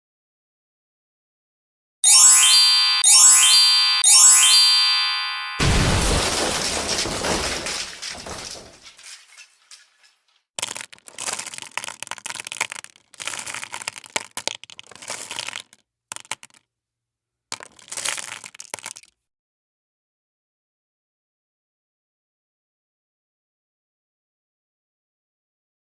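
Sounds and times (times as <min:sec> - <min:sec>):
loud cartoon crash: 0:04.7 - 0:08.9
crunching crackling bursts: 0:05.6 - 0:16.6, 0:17.5 - 0:19.1.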